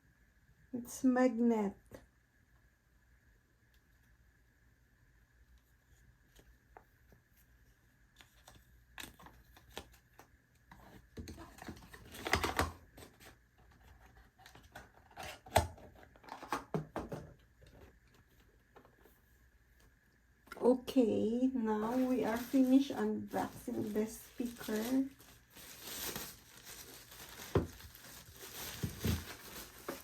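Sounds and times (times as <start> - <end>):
packaging rustling: 21.8 - 30.0.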